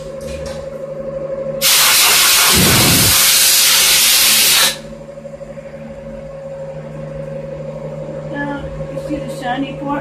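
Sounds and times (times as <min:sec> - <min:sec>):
machine hum: 0:00.0 - 0:10.0
compressed air hissing: 0:01.6 - 0:04.8.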